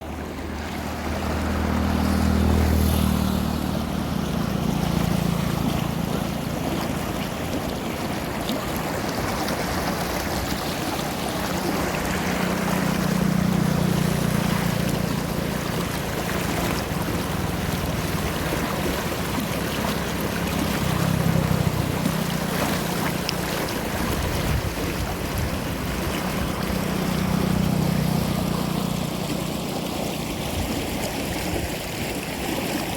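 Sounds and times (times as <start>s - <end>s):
running water rushing: 0.0s - 32.9s.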